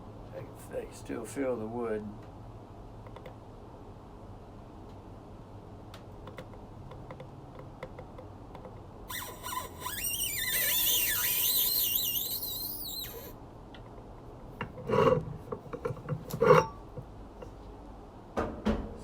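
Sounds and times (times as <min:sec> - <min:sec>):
high-pitched wavering squeal: 0:09.1 - 0:13.3.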